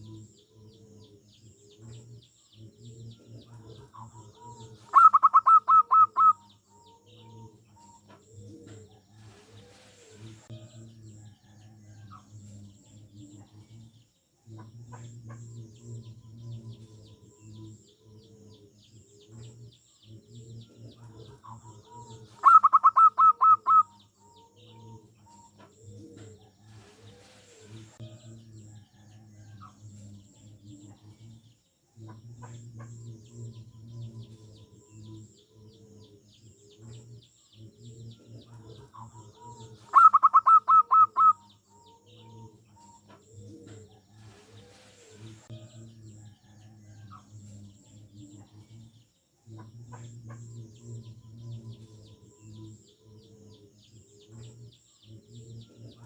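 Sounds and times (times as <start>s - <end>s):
doves cooing: 0.0s - 10.5s, 14.6s - 28.0s, 32.0s - 45.5s
small birds chirping: 0.0s - 56.0s
run of sharp bird notes: 4.9s - 6.4s, 22.4s - 23.9s, 39.9s - 41.4s.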